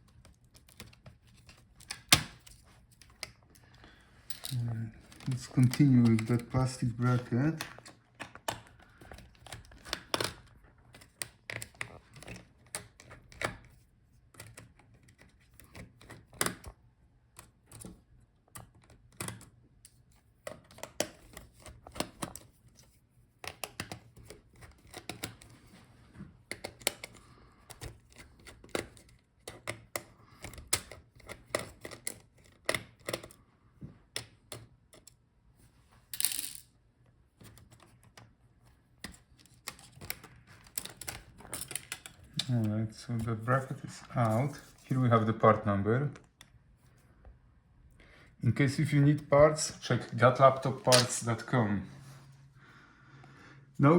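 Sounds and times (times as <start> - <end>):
small parts clicking and tapping: 0.0 - 16.7, 26.5 - 33.4, 34.1 - 35.2, 36.1 - 36.7, 39.0 - 42.6.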